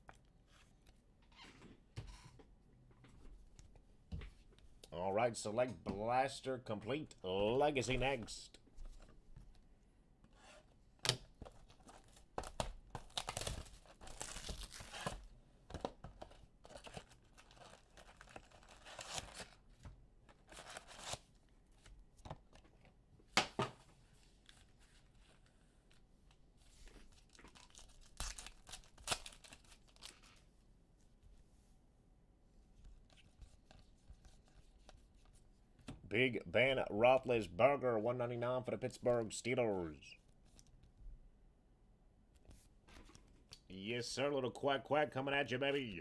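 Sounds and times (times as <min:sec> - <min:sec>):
card packs tearing and crinkling: 0:11.6 - 0:15.3, 0:16.2 - 0:19.6, 0:20.4 - 0:21.3, 0:27.1 - 0:30.3.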